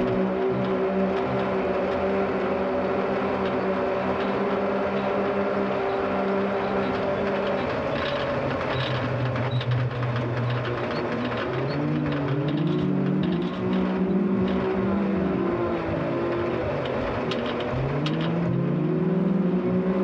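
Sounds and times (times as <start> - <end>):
utility vehicle engine running: 0.0 - 20.0
sharp knocks and rattles: 6.7 - 18.7.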